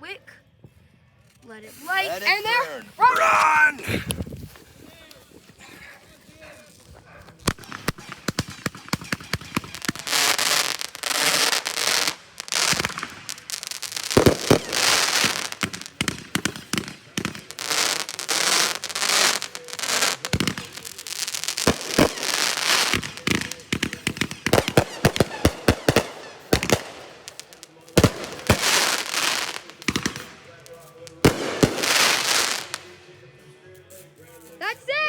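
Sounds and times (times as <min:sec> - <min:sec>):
firework crackling: 0:06.7 - 0:33.1
firework launch pops and bangs: 0:07.4 - 0:13.4, 0:14.1 - 0:19.4, 0:21.6 - 0:30.4.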